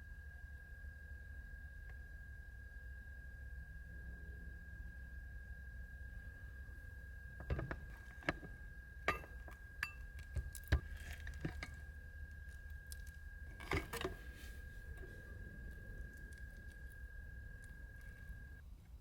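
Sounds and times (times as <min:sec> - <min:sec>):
faint high-pitched tone: 0:00.0 - 0:18.6
small hard objects clinking: 0:07.4 - 0:18.6.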